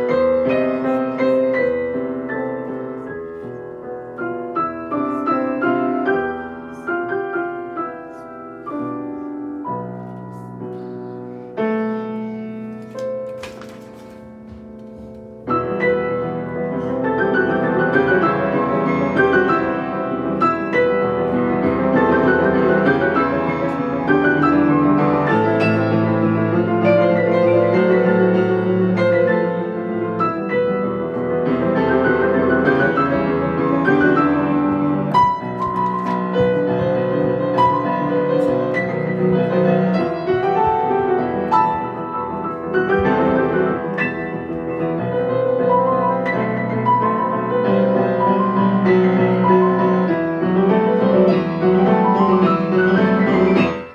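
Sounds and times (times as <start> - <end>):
piano playing quick piece: 0.0 - 53.9.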